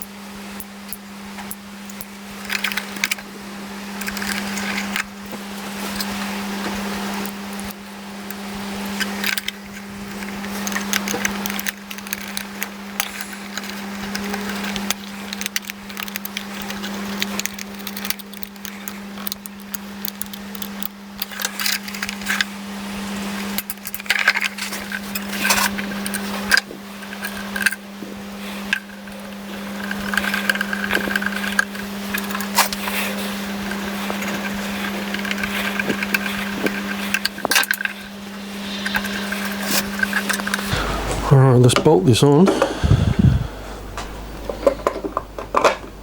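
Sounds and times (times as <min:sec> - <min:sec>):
steady low hum: 0:00.0 - 0:46.0
small tools clicking and clinking: 0:08.8 - 0:22.5, 0:28.7 - 0:38.1.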